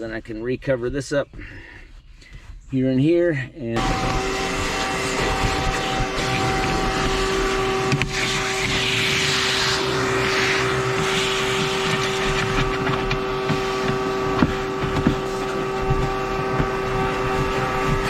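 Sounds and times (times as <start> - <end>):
mechanical hum: 3.8 - 18.0
scraping rustle: 5.2 - 18.0.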